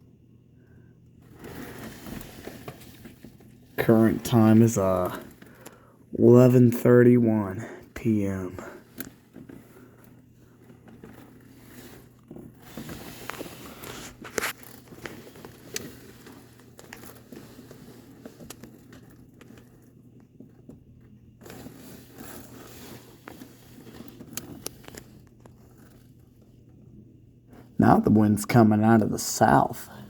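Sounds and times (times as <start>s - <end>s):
faint clicks and crackles: 8.6s - 27.6s.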